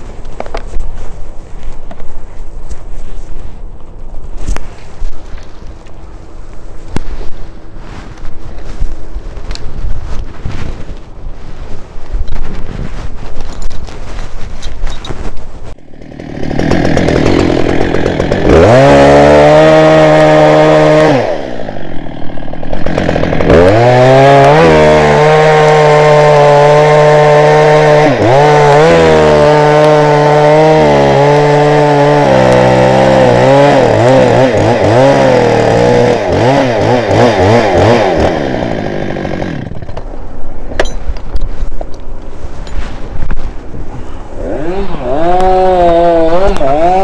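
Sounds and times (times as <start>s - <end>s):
wind noise on microphone: 0.0s - 15.8s, 37.0s - 47.0s
chainsaw cutting wood: 15.7s - 41.4s, 44.4s - 47.0s.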